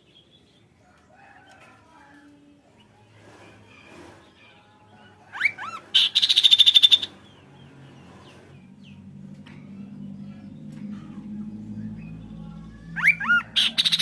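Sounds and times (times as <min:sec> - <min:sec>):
bird rattling trill: 0:05.4 - 0:07.1.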